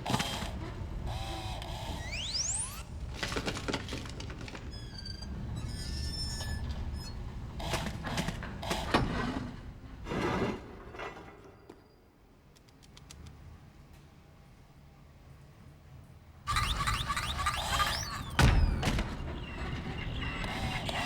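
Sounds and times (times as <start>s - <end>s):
faint clicks: 12.5s - 14.0s
electronic beeps and chirps: 16.5s - 18.8s.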